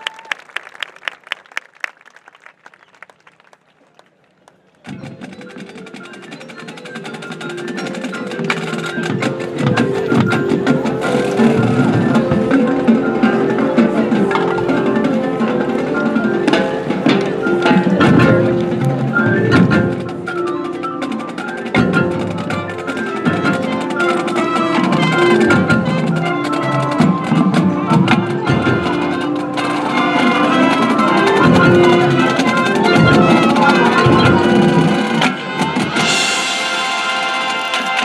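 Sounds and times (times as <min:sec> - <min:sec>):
percussion hits: 0:04.9 - 0:38.0
wind instruments holding chords: 0:05.0 - 0:38.0.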